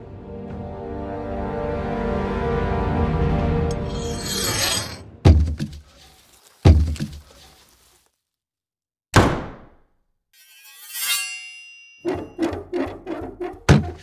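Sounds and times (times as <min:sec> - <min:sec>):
music: 0:00.0 - 0:04.2, 0:12.0 - 0:14.0
heavy thuds: 0:05.3 - 0:07.8, 0:13.6 - 0:14.0
rattling knocks: 0:12.1 - 0:14.0.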